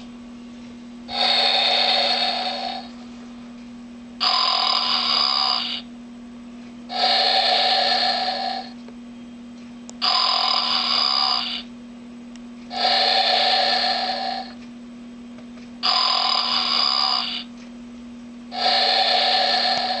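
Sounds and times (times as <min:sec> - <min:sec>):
steady low hum: 0:00.0 - 0:20.0
toy cow snoring through speaker: 0:01.1 - 0:03.0, 0:04.2 - 0:05.9, 0:06.9 - 0:08.8, 0:10.0 - 0:11.7, 0:12.7 - 0:14.6, 0:15.8 - 0:17.5, 0:18.5 - 0:20.0.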